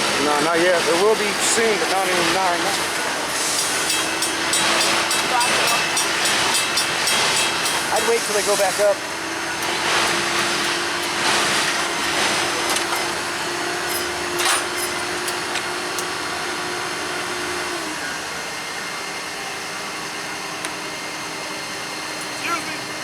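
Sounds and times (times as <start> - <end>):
machine whine: 0.0 - 23.0
track machinery rushing noise: 0.0 - 23.0.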